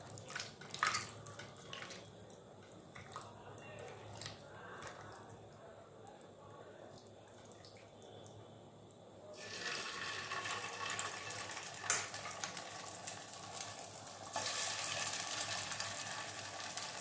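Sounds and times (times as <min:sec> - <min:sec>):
chicken sizzling in hot oil: 0:09.3 - 0:17.0.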